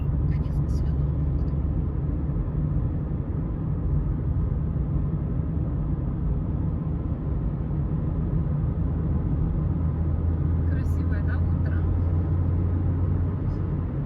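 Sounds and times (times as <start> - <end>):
car engine and tyre rumble: 0.0 - 14.0.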